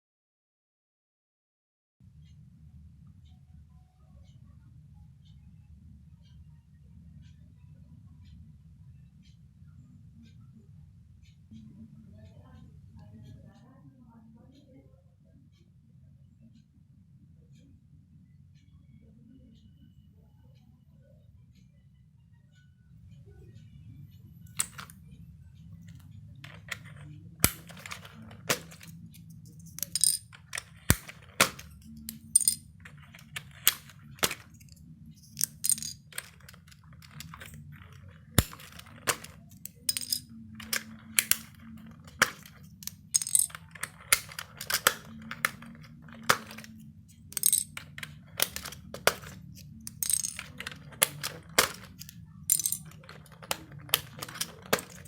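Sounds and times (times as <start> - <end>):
low steady hum: 2.0 - 55.0
plastic keyboard keys clicking: 24.6 - 25.0, 25.9 - 55.0.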